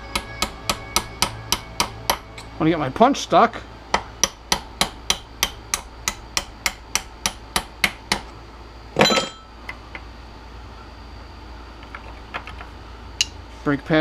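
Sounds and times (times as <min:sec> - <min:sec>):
hammer striking steel punch: 0:00.0 - 0:02.5, 0:03.9 - 0:08.3
metallic clatter with ringing: 0:09.0 - 0:09.5.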